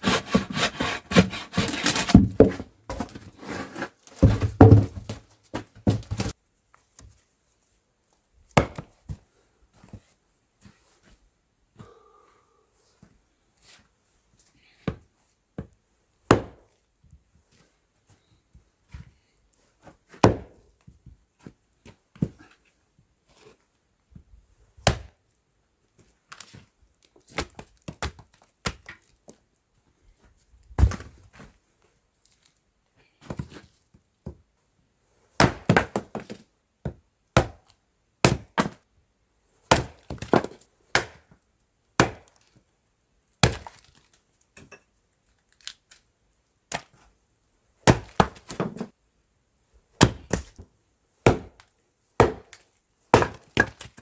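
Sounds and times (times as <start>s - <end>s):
wood being chopped and split: 0.0s - 2.6s, 4.2s - 5.1s, 39.7s - 41.2s, 42.0s - 42.3s, 43.4s - 43.9s, 47.8s - 48.8s, 50.0s - 50.6s, 51.2s - 51.6s, 52.2s - 52.6s, 53.2s - 54.0s.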